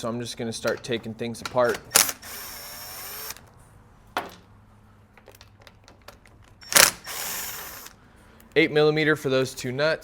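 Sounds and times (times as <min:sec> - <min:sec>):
hand tools and plastic parts clicking: 0:05.1 - 0:08.6.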